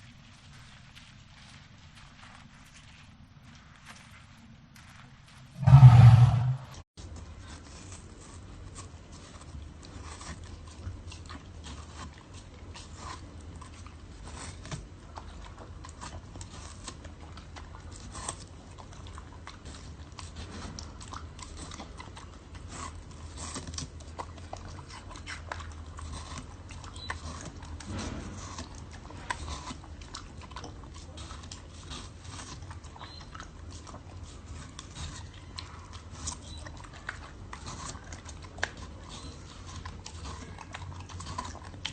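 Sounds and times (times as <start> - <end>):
animal chewing crunchily: 0.0 - 6.2, 7.0 - 41.9
low hum: 5.6 - 6.8.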